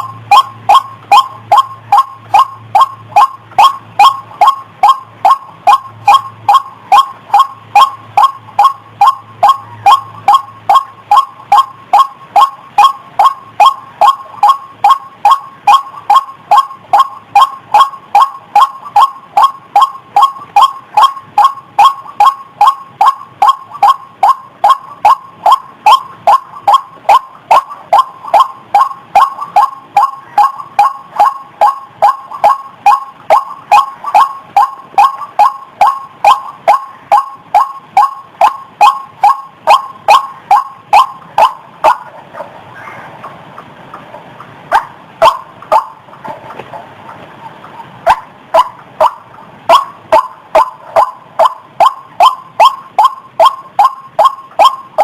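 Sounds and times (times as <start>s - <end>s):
waterhen call lure: 0.0s - 42.0s.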